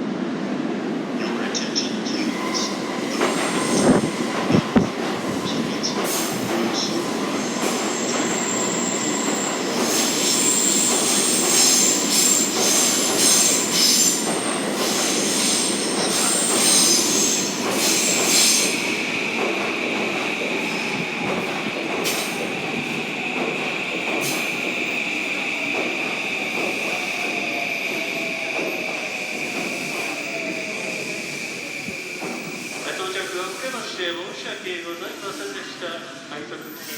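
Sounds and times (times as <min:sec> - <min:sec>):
train wheels rumbling on rails: 0:01.0 - 0:34.5
shrill wheel squeal: 0:02.2 - 0:04.8, 0:06.1 - 0:19.0, 0:36.6 - 0:36.9.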